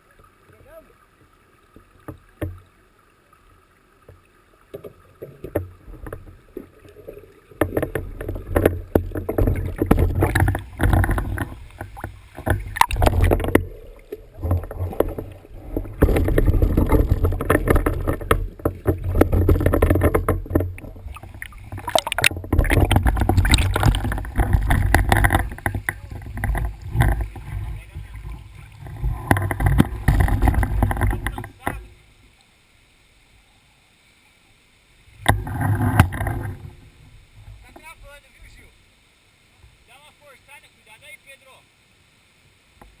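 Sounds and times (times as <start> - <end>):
bike rattles and knocks: 7.6 - 13.7, 14.4 - 21.0, 21.7 - 31.8.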